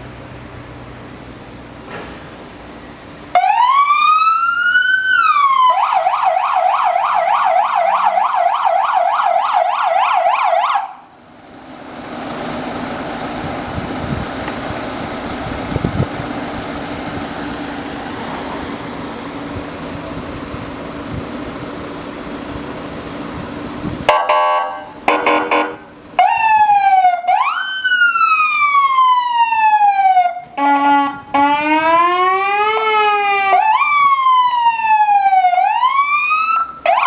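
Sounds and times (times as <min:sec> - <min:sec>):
electronic siren wailing and yelping: 0:03.4 - 0:11.0, 0:24.1 - 0:37.0.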